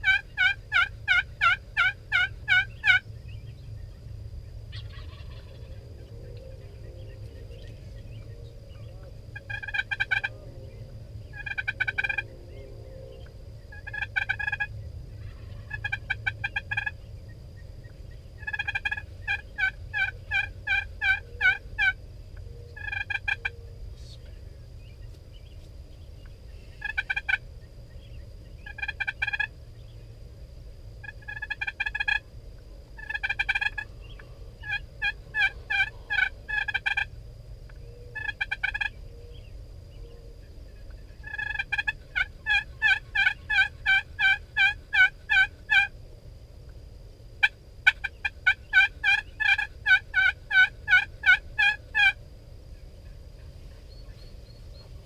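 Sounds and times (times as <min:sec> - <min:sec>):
turkeys gobbling: 0:00.0 - 0:03.0, 0:04.7 - 0:05.8, 0:07.0 - 0:10.4, 0:11.2 - 0:12.3, 0:13.2 - 0:17.0, 0:18.3 - 0:22.0, 0:22.7 - 0:23.6, 0:26.2 - 0:27.4, 0:28.6 - 0:29.6, 0:31.0 - 0:32.3, 0:33.0 - 0:37.1, 0:37.8 - 0:39.0, 0:40.7 - 0:45.9, 0:47.4 - 0:52.2
low rumble: 0:00.6 - 0:55.0.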